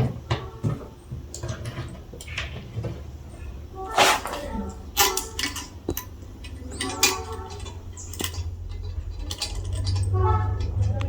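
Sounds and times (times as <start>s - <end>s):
metallic clinks and taps: 5.0s - 10.8s.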